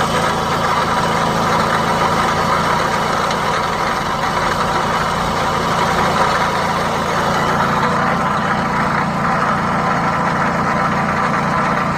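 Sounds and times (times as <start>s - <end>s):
car engine idling: 0.0s - 11.9s
noise from engine bay: 0.0s - 11.9s.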